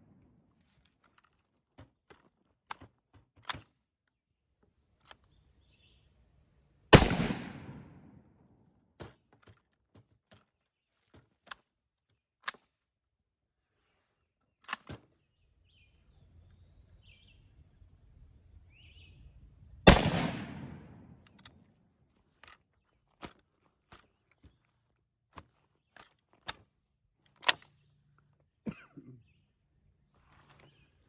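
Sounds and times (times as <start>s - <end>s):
rifle shot echoing: 6.9s - 8.2s, 19.9s - 21.3s
rifle bolt clicks and clacks: 12.4s - 12.8s, 19.9s - 21.6s, 22.3s - 22.6s, 25.3s - 28.2s.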